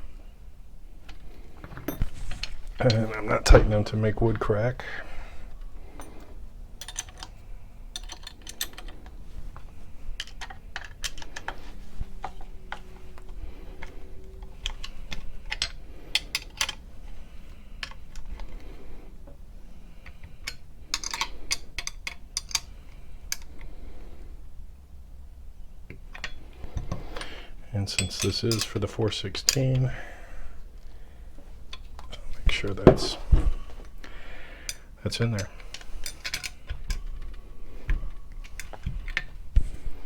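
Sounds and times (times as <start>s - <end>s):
wrench clicking on bolts: 6.8s - 7.3s, 8.0s - 9.0s, 20.1s - 22.7s, 27.9s - 29.9s.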